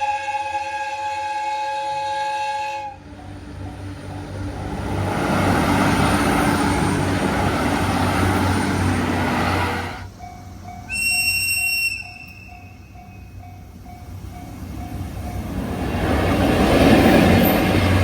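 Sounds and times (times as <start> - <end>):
high train horn blast: 0.0 - 3.1, 10.9 - 12.9
train passing: 0.0 - 18.0.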